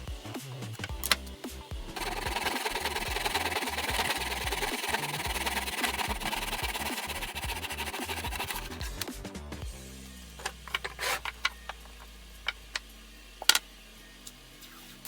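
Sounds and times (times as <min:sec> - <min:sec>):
background music: 0:00.0 - 0:15.0
power saw cutting wood: 0:02.0 - 0:09.1, 0:10.4 - 0:11.5.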